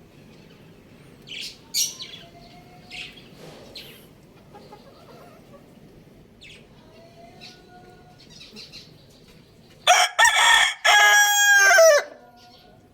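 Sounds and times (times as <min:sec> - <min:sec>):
rooster crowing: 0:09.9 - 0:12.3.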